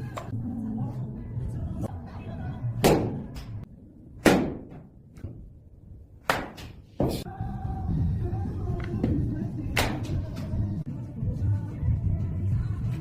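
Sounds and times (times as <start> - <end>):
baseball bat hitting balls: 2.8 - 7.2, 8.8 - 10.4.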